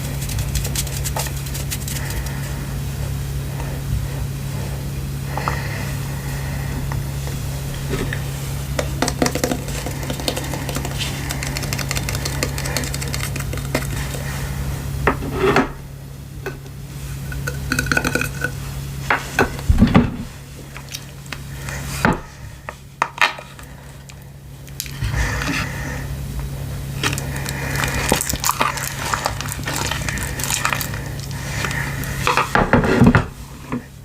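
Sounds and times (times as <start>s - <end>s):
steady low hum: 0.0s - 34.0s
putty squishing and crackling: 8.8s - 14.4s, 27.0s - 32.2s.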